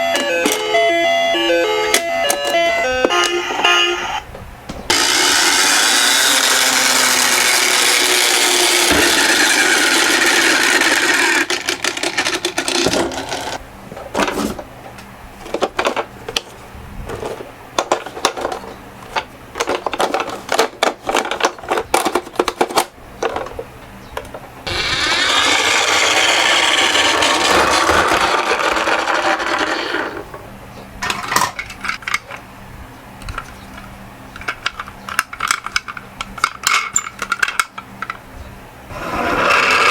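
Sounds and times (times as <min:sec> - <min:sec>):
toy cars rolling down a slope: 0:04.9 - 0:13.6, 0:24.7 - 0:30.2, 0:38.9 - 0:39.9
small cars clicking and clattering: 0:05.0 - 0:13.6.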